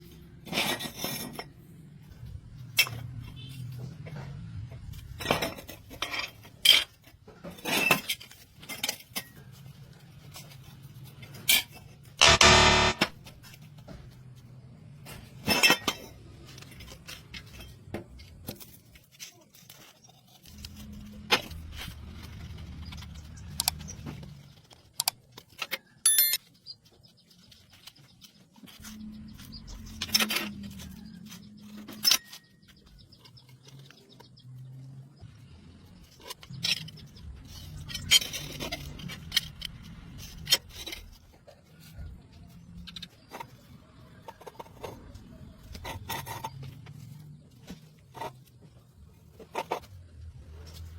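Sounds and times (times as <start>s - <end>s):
metal scraping: 11.3s - 13.3s
metal tools clinking: 26.0s - 26.5s.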